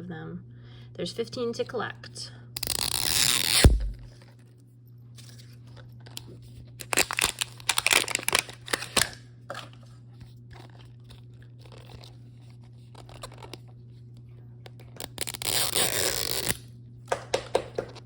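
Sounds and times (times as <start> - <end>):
packaging tearing and crinkling: 2.6 - 4.3, 6.0 - 9.8, 10.6 - 13.7, 14.7 - 16.6
packaging rustling: 6.8 - 9.8, 10.6 - 13.7.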